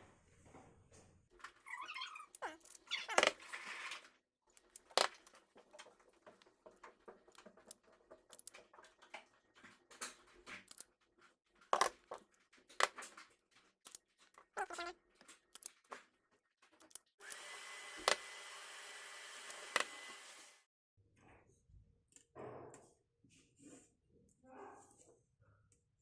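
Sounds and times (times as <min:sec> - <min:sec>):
small clicks of wire handling: 0:04.5 - 0:10.9, 0:11.8 - 0:14.5, 0:15.2 - 0:16.0, 0:16.6 - 0:17.4.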